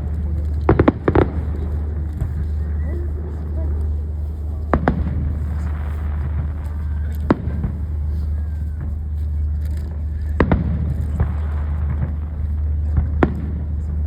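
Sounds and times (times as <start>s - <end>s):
fireworks bangs: 0.0s - 14.0s
low rumble: 0.0s - 14.0s.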